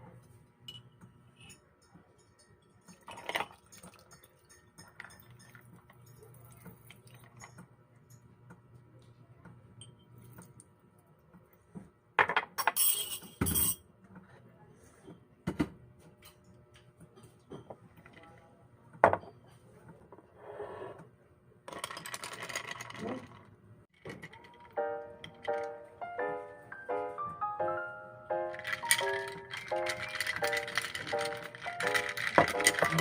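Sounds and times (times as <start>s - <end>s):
glass and dishware clinking: 0.7s - 8.3s, 12.6s - 13.8s, 28.6s - 33.0s
dishes clattering: 2.2s - 6.4s, 28.6s - 33.0s.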